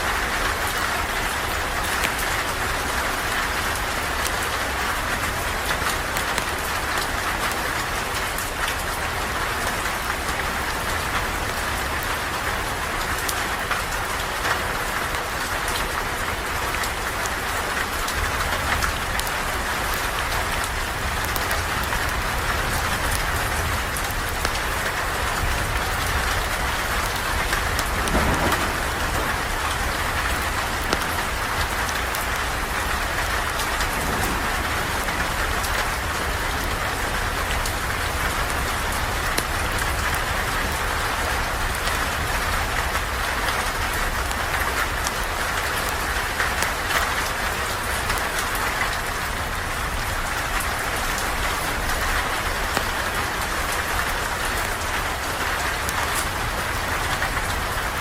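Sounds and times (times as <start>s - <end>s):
steady rain falling: 0.0s - 58.0s
campfire crackling: 18.1s - 40.8s.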